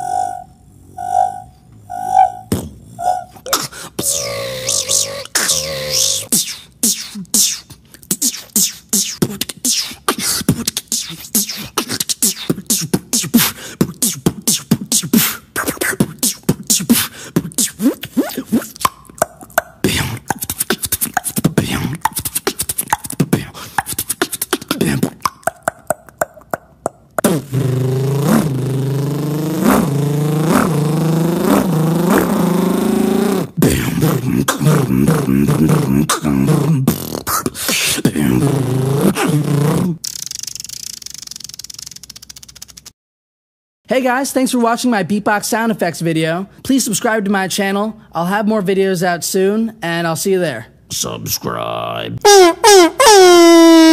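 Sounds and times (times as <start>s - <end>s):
buzzing voiced tone: 0.0s - 7.6s, 27.2s - 40.6s
beatboxing clicks and hits: 2.5s - 43.0s.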